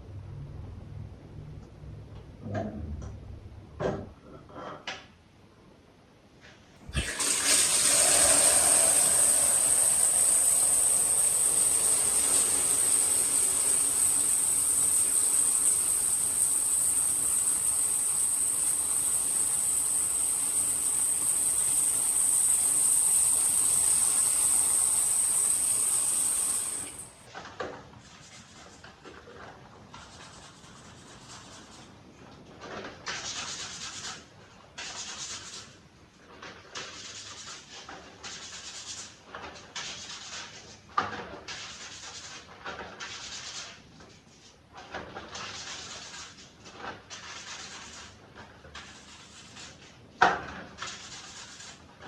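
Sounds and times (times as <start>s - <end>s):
steady hissing rush: 7.0s - 27.2s.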